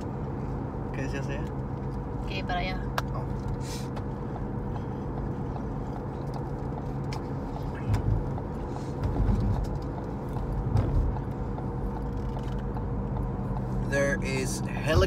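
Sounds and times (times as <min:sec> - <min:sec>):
low engine drone: 0:00.0 - 0:15.0.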